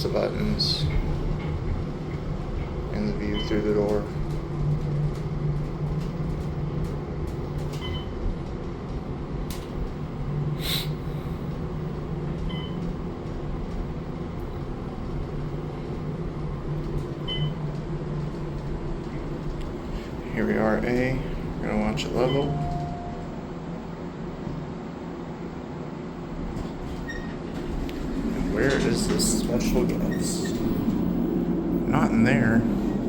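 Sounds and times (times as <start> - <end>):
elevator drive humming: 0.0 - 33.0
short high beeps: 22.2 - 23.3.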